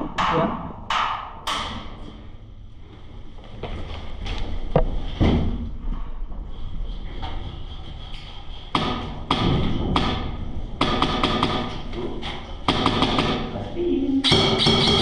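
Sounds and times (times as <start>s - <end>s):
airsoft rifle shots: 8.8s - 11.8s, 12.7s - 13.5s, 14.3s - 15.0s.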